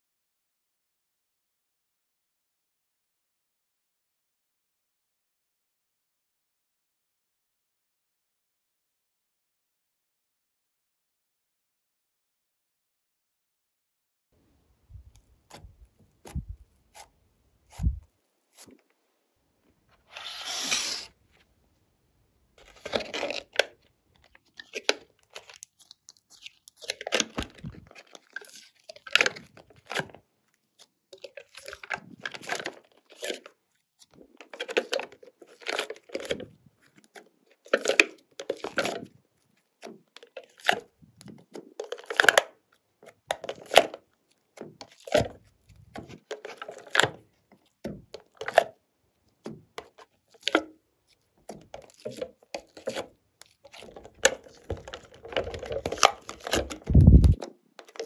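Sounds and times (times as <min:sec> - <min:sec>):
slime squelching by hand: 0:15.0 - 0:18.8, 0:22.6 - 0:48.6, 0:49.3 - 0:58.0.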